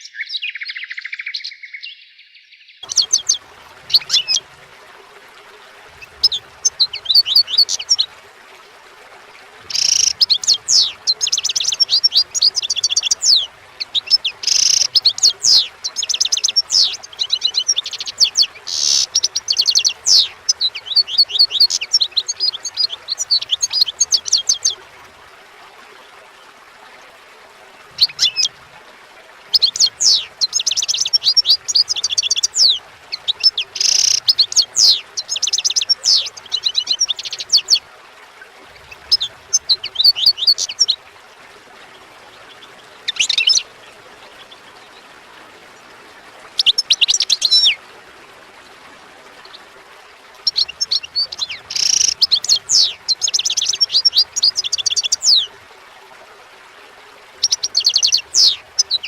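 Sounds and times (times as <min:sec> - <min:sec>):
songbird chirping and trilling: 0:00.0 - 0:04.4, 0:06.0 - 0:08.1, 0:09.7 - 0:24.8, 0:29.5 - 0:37.8, 0:38.7 - 0:41.0, 0:42.5 - 0:43.7, 0:46.6 - 0:47.8, 0:50.4 - 0:55.6, 0:57.4 - 0:59.0.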